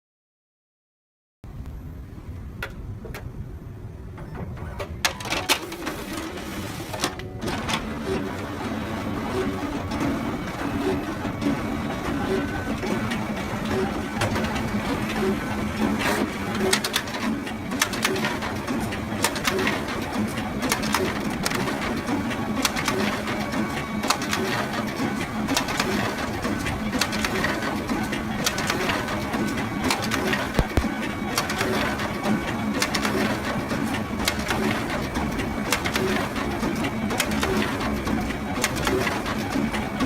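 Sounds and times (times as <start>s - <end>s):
photocopier humming: 4.6s - 40.0s
photocopier mechanism clicking: 29.8s - 32.0s.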